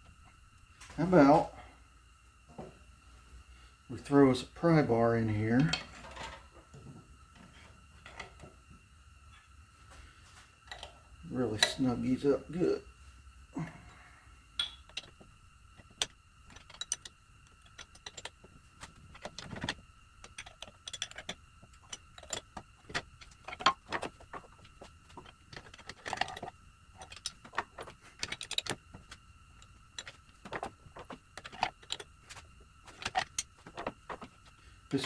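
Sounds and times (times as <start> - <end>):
hand wrench clicking: 14.6 - 15.2, 15.8 - 35.0.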